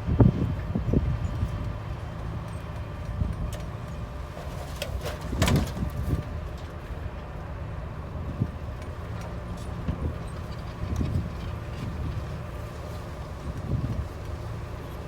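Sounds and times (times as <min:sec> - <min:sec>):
bulldozer diesel engine rumbling: 0:00.0 - 0:15.0
loud clatter: 0:04.3 - 0:06.2.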